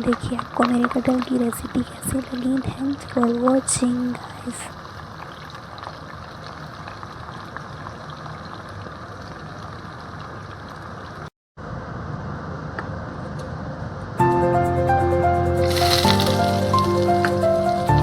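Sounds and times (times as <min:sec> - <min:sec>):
food sizzling and bubbling in a pan: 0:00.0 - 0:11.3.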